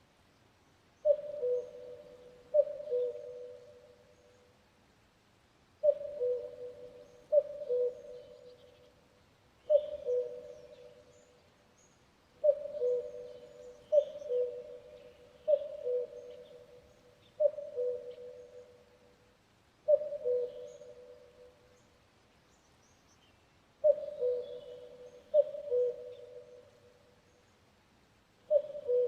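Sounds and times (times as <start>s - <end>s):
cuckoo calling: 1.0s - 4.0s, 5.8s - 8.8s, 9.7s - 11.3s, 12.4s - 18.8s, 19.9s - 21.6s, 23.8s - 26.8s, 28.5s - 29.0s.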